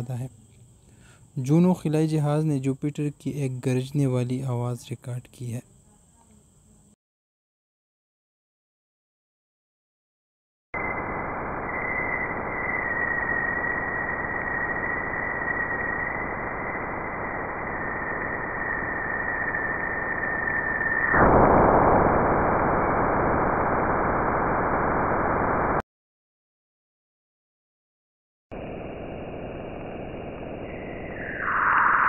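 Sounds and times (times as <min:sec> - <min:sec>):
thin high tone sinking in pitch: 0:10.8 - 0:23.9, 0:28.5 - 0:32.0.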